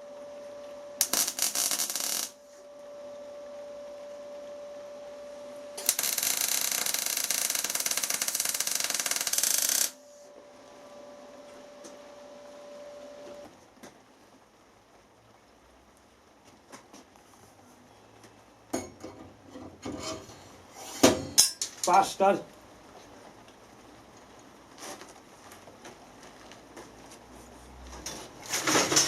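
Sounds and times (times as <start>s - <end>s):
workshop machinery hum: 0.0s - 13.6s.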